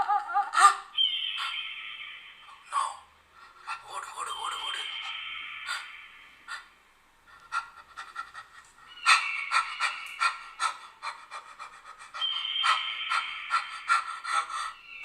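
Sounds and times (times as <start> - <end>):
steady high tone: 4.1 - 6.5
person panting: 9.5 - 14.9.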